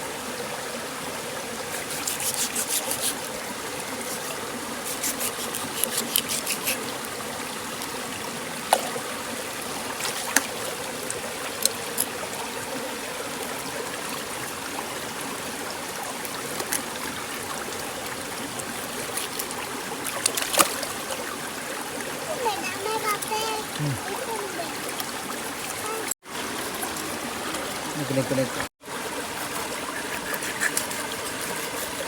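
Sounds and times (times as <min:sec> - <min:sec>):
water running and trickling: 0:00.0 - 0:32.0.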